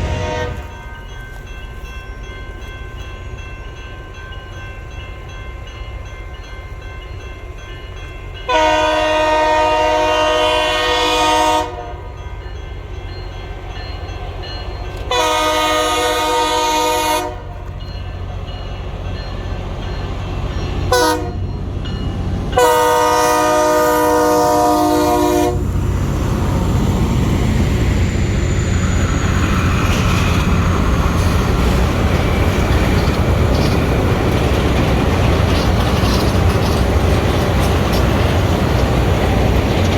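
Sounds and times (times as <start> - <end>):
locomotive air horn blasts: 0.0 - 0.9, 8.5 - 12.1, 15.1 - 17.6, 20.9 - 21.5, 22.6 - 25.7
train rumbling: 0.0 - 39.9.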